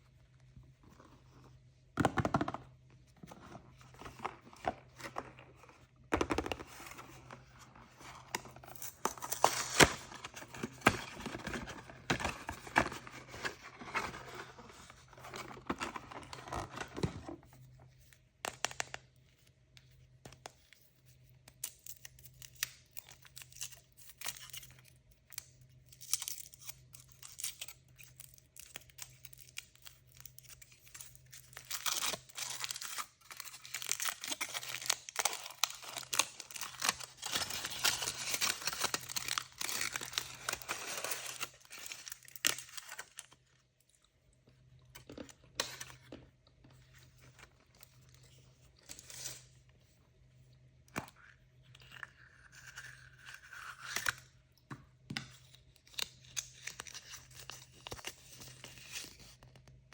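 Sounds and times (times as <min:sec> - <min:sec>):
packaging tearing and crinkling: 0:08.4 - 0:14.6, 0:26.0 - 0:43.3.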